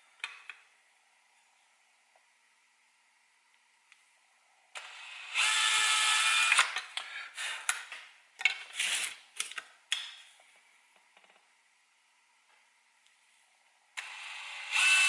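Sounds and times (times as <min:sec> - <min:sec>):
power drill drilling: 0:04.8 - 0:06.7, 0:14.0 - 0:15.0.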